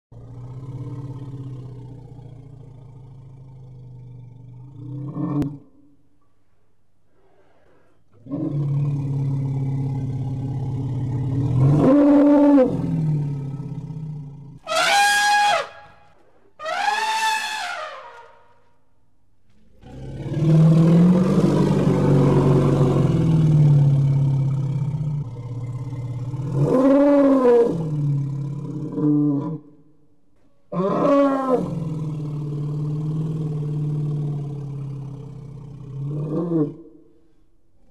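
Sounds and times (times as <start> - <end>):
elephant growling: 0.2 - 5.6, 7.3 - 15.7, 19.7 - 29.6
elephant trumpet calls: 14.6 - 16.0, 16.6 - 18.5.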